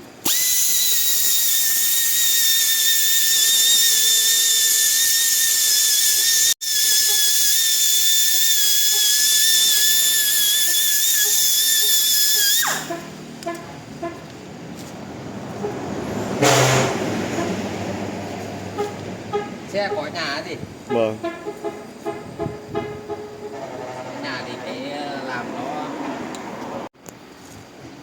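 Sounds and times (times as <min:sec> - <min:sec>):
high-pitched rotary tool whine: 0:00.2 - 0:13.1.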